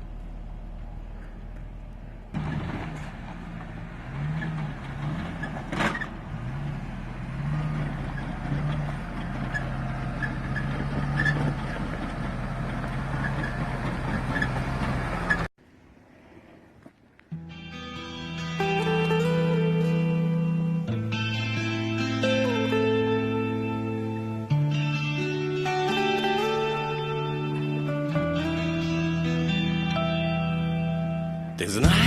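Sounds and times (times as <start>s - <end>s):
rumbling road noise: 0.0s - 17.7s, 18.6s - 32.0s
off-road vehicle engine revving: 1.1s - 15.5s.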